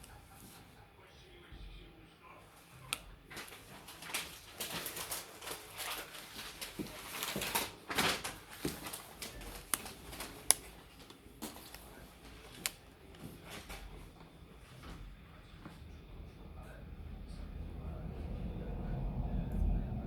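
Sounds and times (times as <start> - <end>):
sharp plastic clicks: 6.6 - 14.3.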